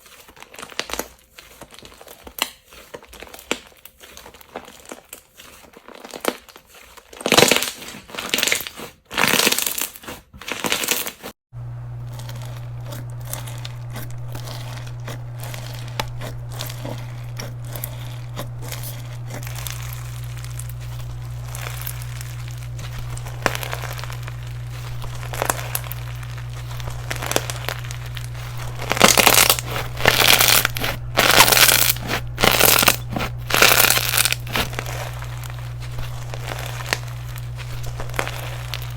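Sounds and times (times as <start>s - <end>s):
steady low hum: 11.6s - 38.9s
slime crackling when squeezed: 12.1s - 38.9s.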